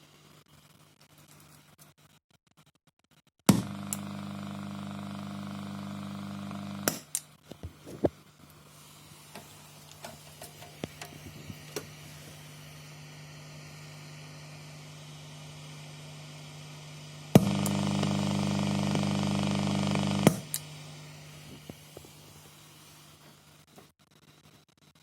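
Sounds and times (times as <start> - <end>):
loud electrical buzz-hum: 3.5 - 7.2, 11.2 - 21.8
crackles and pops: 17.4 - 20.7.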